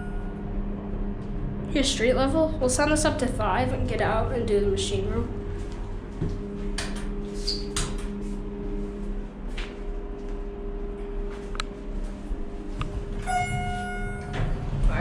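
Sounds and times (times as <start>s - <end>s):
short electronic tone: 0.0s - 0.4s, 13.2s - 14.6s
elevator hum: 0.0s - 15.0s.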